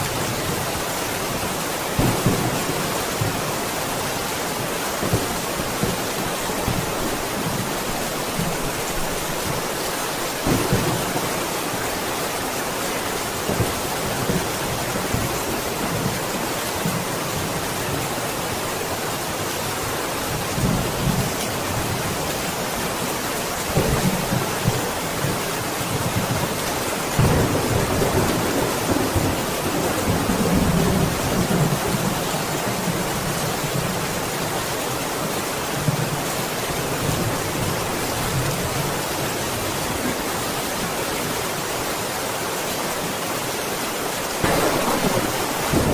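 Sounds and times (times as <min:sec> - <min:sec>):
heavy rain hissing: 0:00.0 - 0:45.9
thunder rumbling: 0:02.0 - 0:03.6, 0:10.4 - 0:12.1, 0:23.7 - 0:32.2, 0:44.4 - 0:45.9.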